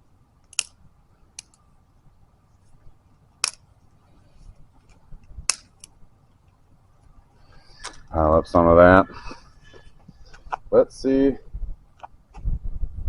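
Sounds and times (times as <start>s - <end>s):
dry sticks cracking: 0.4s - 1.6s, 4.8s - 7.2s.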